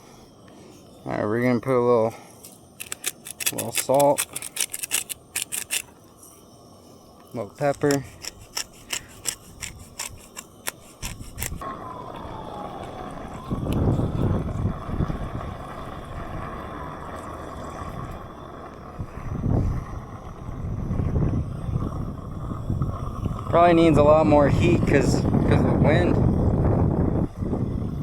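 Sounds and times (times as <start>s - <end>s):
pepper grinder clicking: 2.8s - 5.9s, 7.6s - 11.6s
wind buffeting microphone: 19.3s - 28.0s.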